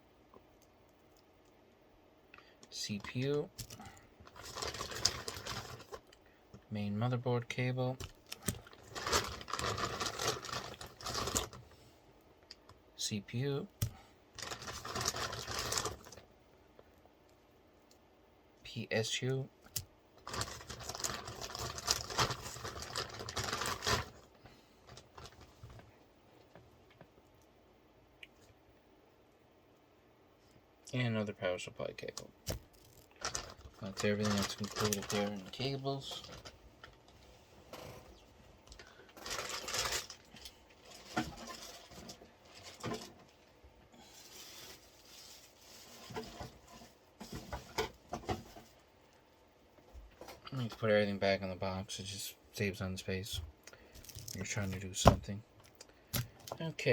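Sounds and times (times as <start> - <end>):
plastic bags rustling: 3.6 - 6.0, 8.1 - 11.7, 14.4 - 16.2, 20.2 - 25.7, 32.8 - 37.0, 39.0 - 43.3.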